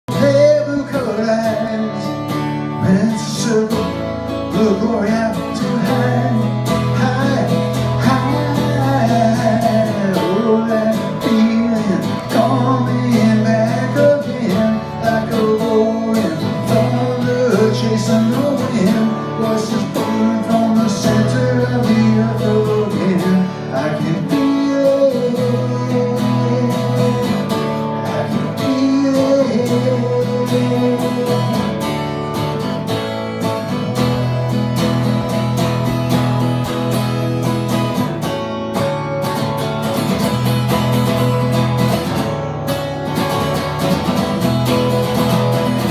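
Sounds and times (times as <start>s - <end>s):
bass line: 0.1s - 23.2s, 24.1s - 45.9s
person singing: 0.1s - 31.8s
guitar-led music: 0.1s - 45.9s.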